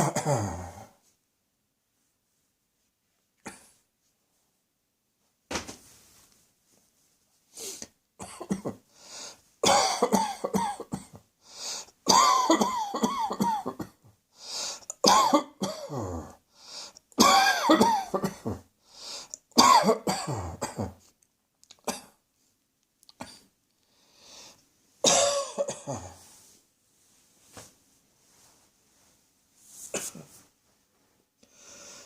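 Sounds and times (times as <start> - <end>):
person coughing: 0.0 - 1.0, 8.2 - 8.8, 9.6 - 11.2, 12.1 - 14.0, 14.9 - 16.4, 17.2 - 18.7, 19.6 - 21.0, 21.8 - 22.2, 25.0 - 26.2, 29.9 - 30.4.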